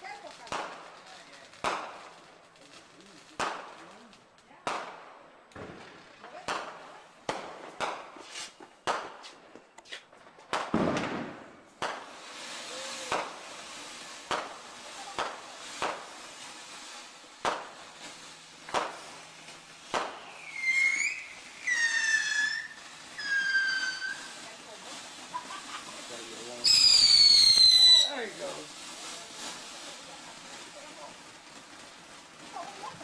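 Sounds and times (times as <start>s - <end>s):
firework cracks: 0.0s - 33.0s
firework spraying hiss: 0.0s - 33.0s
shrill firework whistles: 19.9s - 24.4s, 25.2s - 28.3s.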